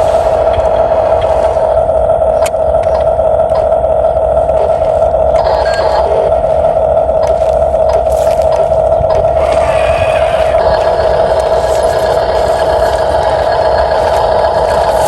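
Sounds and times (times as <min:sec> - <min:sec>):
electric motor whine: 0:00.0 - 0:15.0
gear mechanism clicks: 0:00.0 - 0:15.0.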